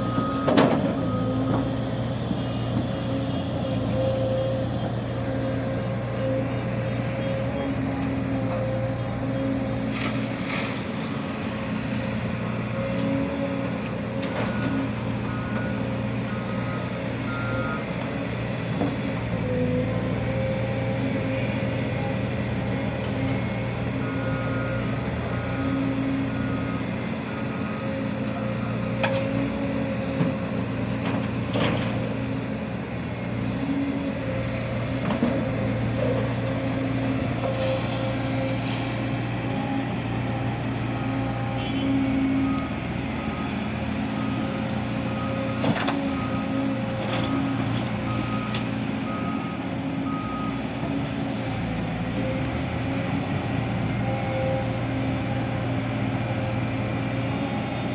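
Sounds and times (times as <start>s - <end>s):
reversing alarm beeping: 0.0s - 2.6s, 14.3s - 18.0s, 23.9s - 29.9s, 39.2s - 51.4s
diesel engine running: 0.0s - 57.9s.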